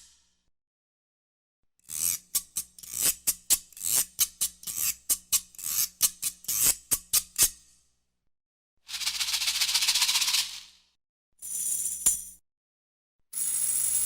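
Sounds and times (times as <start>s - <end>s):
hand percussion swishes and clicks: 8.9s - 10.7s.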